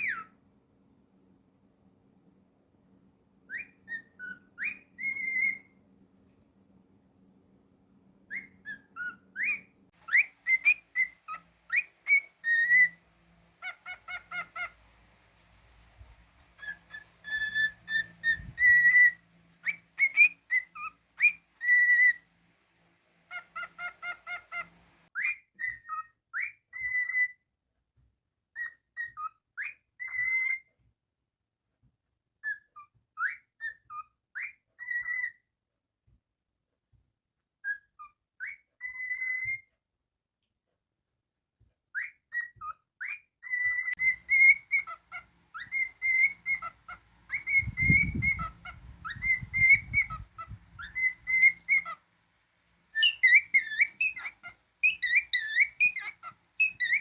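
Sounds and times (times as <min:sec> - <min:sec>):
cockatiel whistling a tune: 0:00.0 - 0:00.3, 0:03.5 - 0:05.8, 0:08.3 - 0:13.0, 0:13.6 - 0:14.8, 0:16.6 - 0:22.2, 0:23.3 - 0:27.4, 0:28.6 - 0:30.7, 0:32.4 - 0:35.4, 0:37.7 - 0:39.7, 0:42.0 - 0:52.0, 0:52.9 - 0:57.0.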